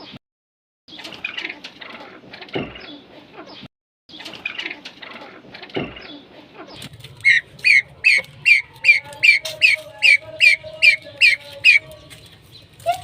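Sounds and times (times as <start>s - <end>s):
bird giving short high calls: 7.2s - 11.8s.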